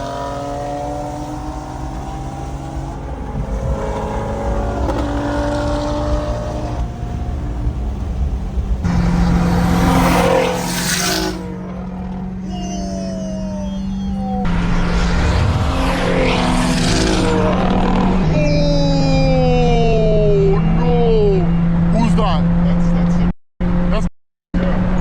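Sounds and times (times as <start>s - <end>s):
car engine revving: 0.0s - 24.0s
loud rushing surge: 8.8s - 12.4s, 13.8s - 18.4s.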